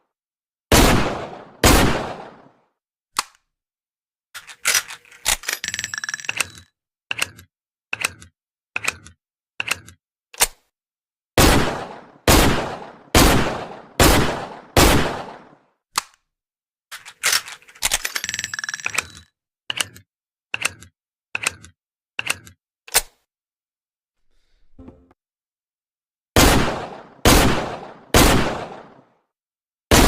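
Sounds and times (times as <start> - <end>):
revolver gunshots: 0.7 - 2.6, 11.4 - 15.6, 26.4 - 29.0
metallic clinking and rattling: 4.4 - 6.7, 17.0 - 19.3.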